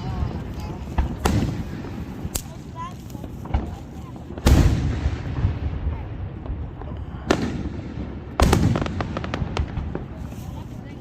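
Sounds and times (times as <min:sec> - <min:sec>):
firework booms: 0:00.1 - 0:02.3, 0:03.3 - 0:10.4
crackling firework pops: 0:00.2 - 0:10.5
firework bang: 0:01.0 - 0:02.2, 0:04.4 - 0:10.0.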